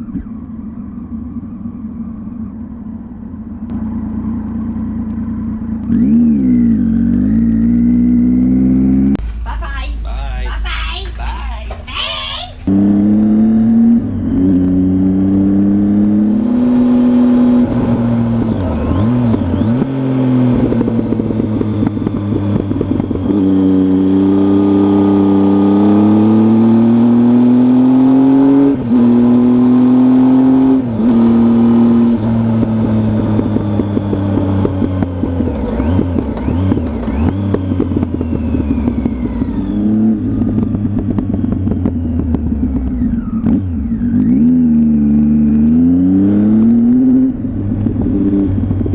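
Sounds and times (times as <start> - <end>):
motorcycle engine revving: 0.0 - 9.2, 12.6 - 48.9.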